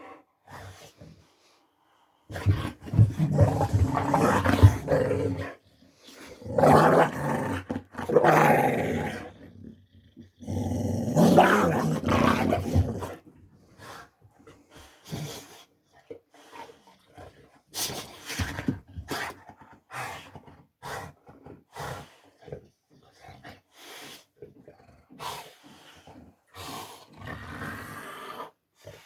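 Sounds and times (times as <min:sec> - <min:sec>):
dog growling vocalisations: 0:02.3 - 0:13.3.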